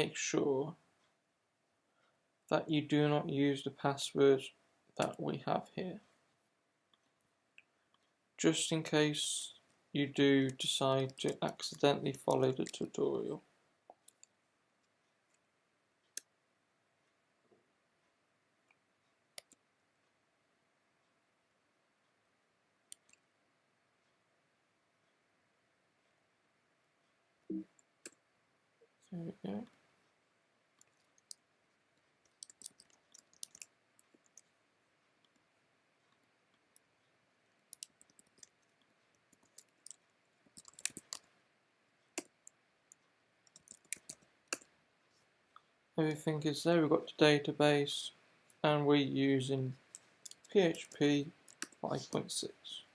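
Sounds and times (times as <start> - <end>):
computer clicks: 32.2 - 34.5, 37.7 - 38.7, 40.6 - 41.3, 42.2 - 44.7.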